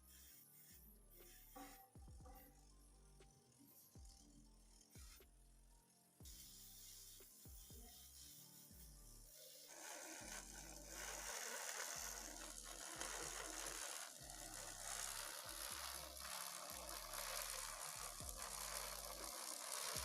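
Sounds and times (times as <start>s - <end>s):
background music: 0.0s - 20.0s
steam hissing from a nozzle: 7.8s - 20.0s.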